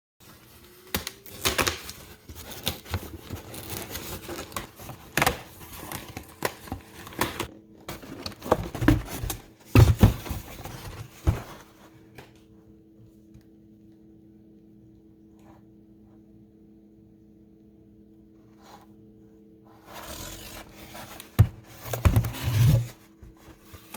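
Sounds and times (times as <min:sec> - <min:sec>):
faint steady hum: 0:00.2 - 0:23.9
packaging clicking crinkling and tearing: 0:00.3 - 0:09.4.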